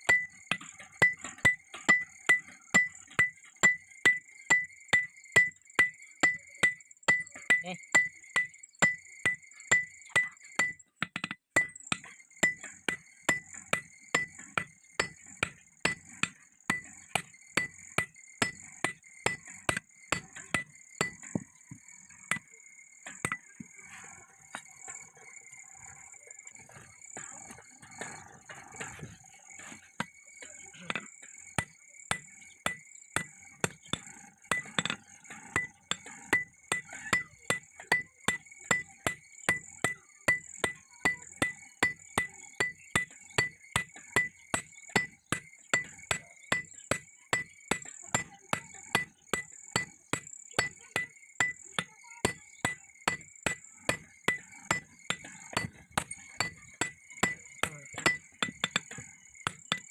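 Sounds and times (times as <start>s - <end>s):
hammer striking steel on anvil: 0.0s - 21.7s, 26.6s - 59.9s.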